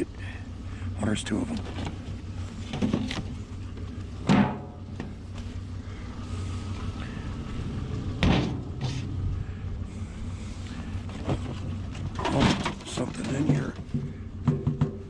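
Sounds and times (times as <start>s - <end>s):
vehicle idling hum: 0.0s - 15.0s
metal scrap knocking and clanking: 4.2s - 5.1s, 8.2s - 9.0s, 12.0s - 15.0s.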